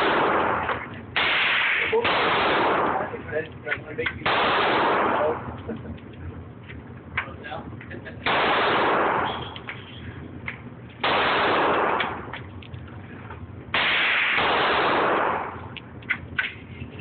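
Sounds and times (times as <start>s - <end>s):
pistol shots: 0.0s - 3.3s, 4.2s - 5.6s, 8.2s - 9.9s, 11.0s - 12.4s, 13.7s - 15.8s.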